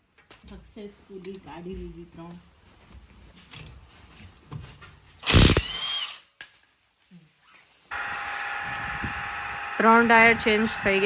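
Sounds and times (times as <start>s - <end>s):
power tool burst: 5.2s - 6.3s, 7.9s - 11.0s
steady mechanical whine: 7.9s - 11.0s.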